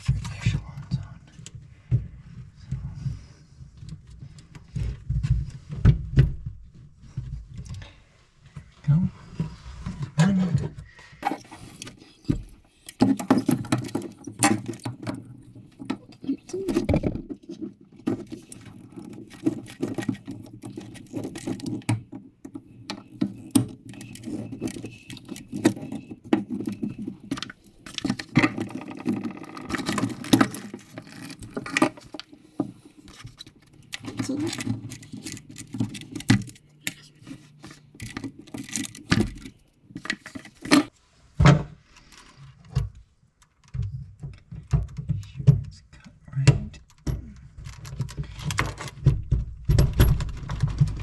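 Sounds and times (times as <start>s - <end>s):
tools and plumbing fittings rattling: 11.2s - 40.9s.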